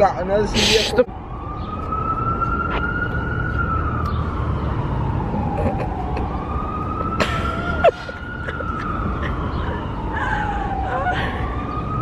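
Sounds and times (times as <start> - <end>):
emergency siren wailing: 0.5 - 12.0.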